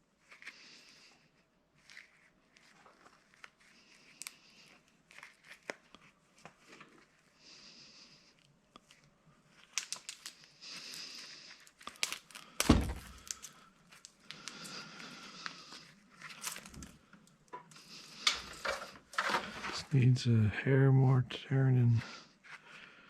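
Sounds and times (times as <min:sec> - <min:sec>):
plastic insulation crinkling: 0:11.6 - 0:14.7, 0:17.9 - 0:19.9
loud thunk: 0:12.6 - 0:13.1.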